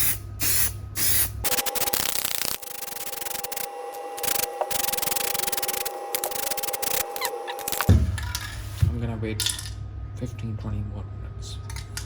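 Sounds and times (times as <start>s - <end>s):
spray can hissing: 0.0s - 7.8s
steady hum: 0.0s - 12.0s.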